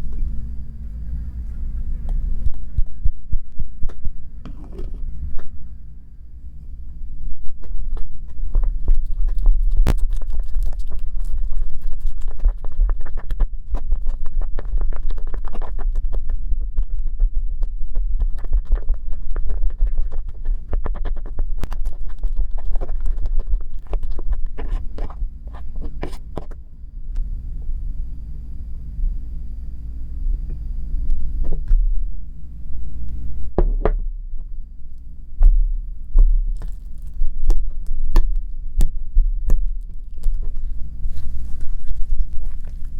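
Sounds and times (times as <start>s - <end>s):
low thumps: 30.3s - 36.6s.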